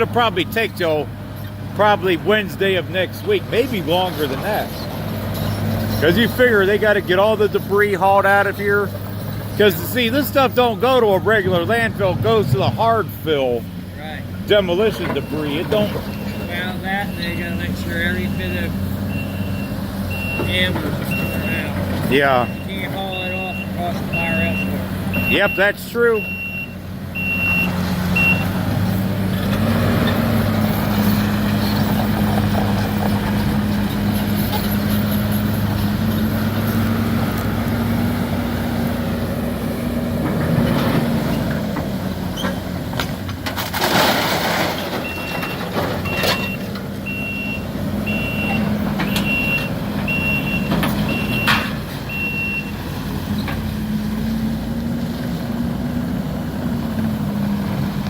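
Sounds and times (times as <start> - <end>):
diesel engine revving: 0.0 - 58.0
backup alarm beeping: 22.3 - 28.5, 45.0 - 52.8.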